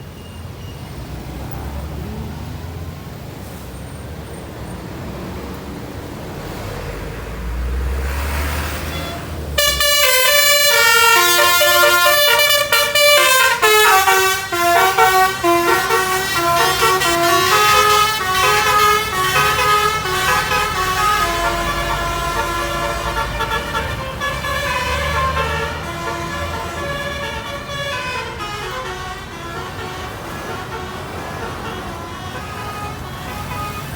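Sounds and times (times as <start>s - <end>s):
low vehicle rumble: 4.9s - 33.9s
multi-tone musical bus horn: 8.6s - 33.9s.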